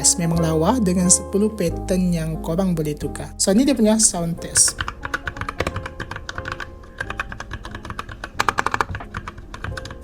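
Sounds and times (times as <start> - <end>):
mechanical keyboard typing: 4.4 - 10.0.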